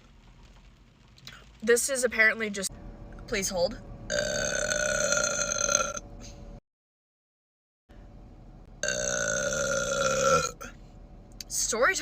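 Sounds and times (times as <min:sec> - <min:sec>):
woman burping: 0:04.1 - 0:06.0, 0:08.8 - 0:10.7.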